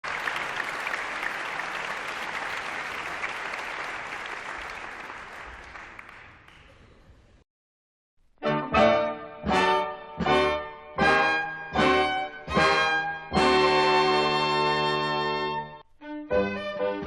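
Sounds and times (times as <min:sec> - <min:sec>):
audience applauding: 0:00.0 - 0:06.9.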